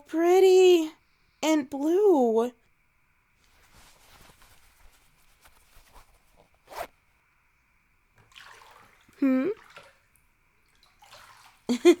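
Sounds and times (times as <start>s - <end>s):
clothing rustling and rasping: 3.4s - 7.0s.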